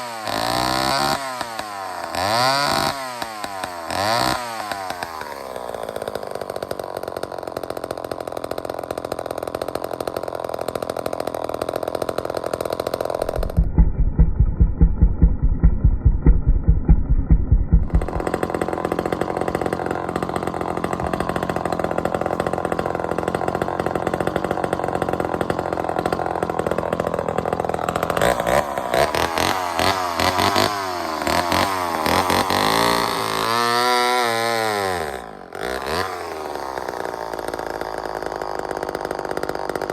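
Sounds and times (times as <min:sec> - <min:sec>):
chainsaw running and revving: 0:00.0 - 0:39.9
muffled low pulsing: 0:13.3 - 0:18.3.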